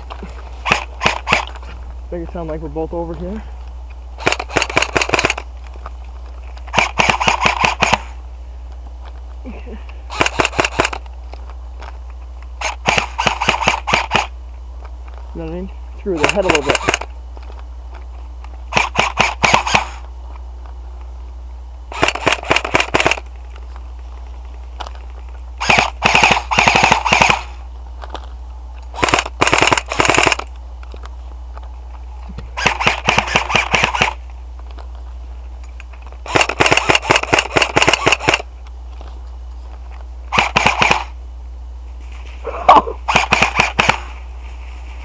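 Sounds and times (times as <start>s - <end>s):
airsoft rifle full-auto bursts: 0.6s - 1.7s, 4.2s - 5.5s, 6.7s - 8.2s, 10.1s - 11.1s, 12.6s - 14.4s, 16.1s - 17.1s, 18.7s - 20.1s, 21.9s - 23.3s, 25.6s - 27.6s, 28.9s - 30.5s, 32.6s - 34.2s, 36.2s - 38.5s, 40.3s - 41.2s, 43.0s - 44.2s.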